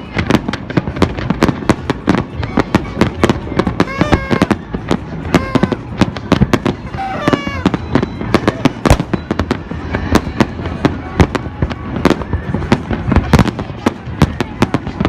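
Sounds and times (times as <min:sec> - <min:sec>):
fireworks bangs and crackles: 0:00.0 - 0:15.0.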